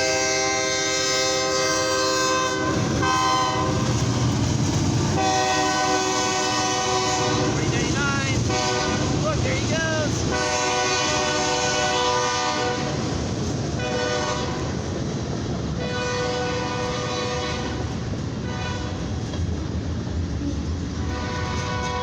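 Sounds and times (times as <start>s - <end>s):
train horn blasts: 0.0s - 3.9s, 5.2s - 9.2s, 10.2s - 13.1s, 13.8s - 14.7s, 15.8s - 17.8s, 18.4s - 19.0s, 21.0s - 22.0s
freight train rumbling: 0.0s - 22.0s.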